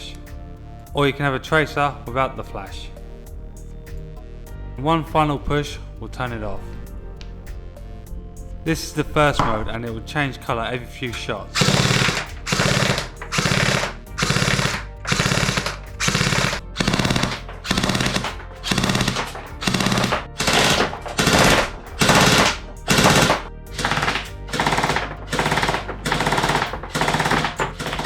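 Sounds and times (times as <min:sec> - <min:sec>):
airsoft pistol full-auto bursts: 0:11.6 - 0:28.0.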